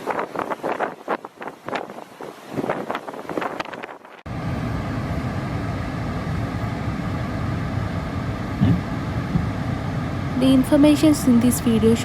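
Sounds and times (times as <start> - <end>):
wind battering microphone: 0.0 - 6.2.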